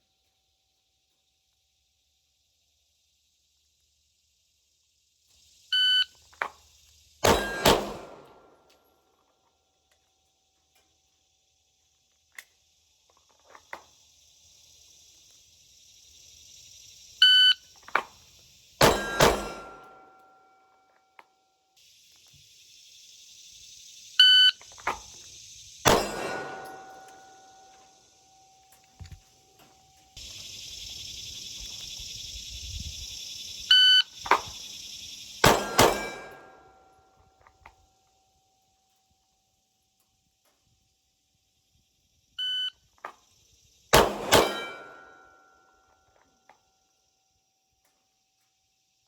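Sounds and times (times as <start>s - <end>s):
pistol shots: 7.2s - 8.5s, 18.8s - 20.0s, 25.9s - 27.5s, 35.4s - 36.5s, 44.0s - 45.1s
steady high hiss: 21.8s - 37.4s.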